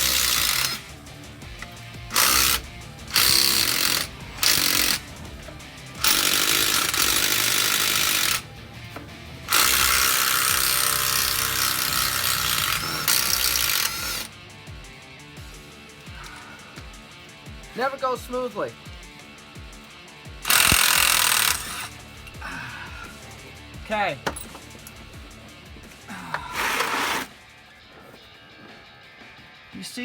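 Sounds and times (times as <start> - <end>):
impact wrench bursts: 0.0 - 14.4, 20.4 - 27.4.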